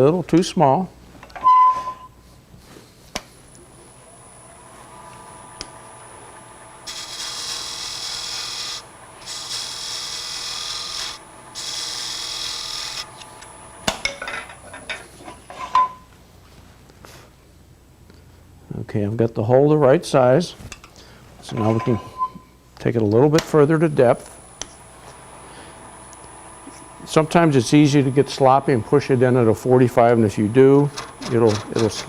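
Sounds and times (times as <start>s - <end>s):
wood lathe whine: 3.5s - 13.9s, 24.2s - 32.0s
gouge cutting wood hiss: 5.2s - 13.4s.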